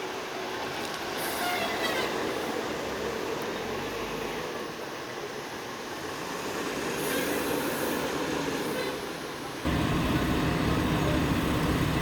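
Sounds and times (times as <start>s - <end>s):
passing vehicles rushing: 0.1s - 12.0s
deep engine rumble: 9.6s - 12.0s.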